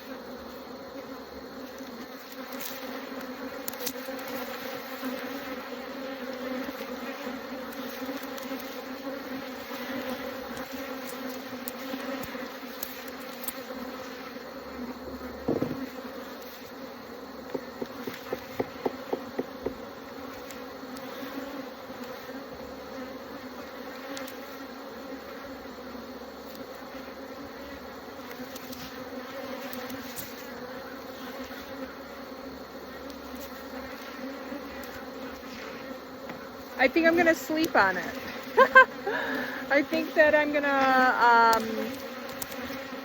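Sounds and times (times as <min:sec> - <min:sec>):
bees buzzing: 0:00.0 - 0:43.0
single knock: 0:15.4 - 0:15.9, 0:17.5 - 0:19.8.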